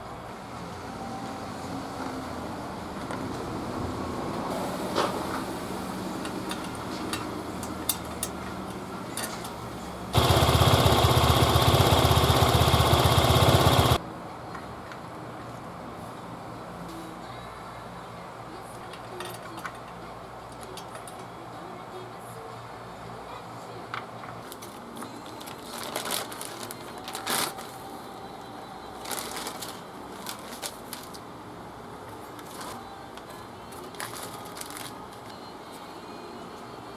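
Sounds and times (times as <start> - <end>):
steady background noise: 0.0 - 36.9
hand work clicks and rattles: 10.2 - 14.0
machine pulsing rhythmically: 10.2 - 14.0.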